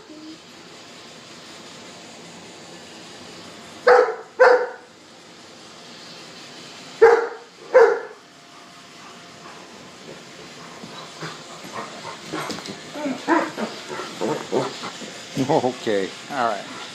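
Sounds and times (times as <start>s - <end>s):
dog barking: 3.9s - 4.9s, 7.0s - 8.2s.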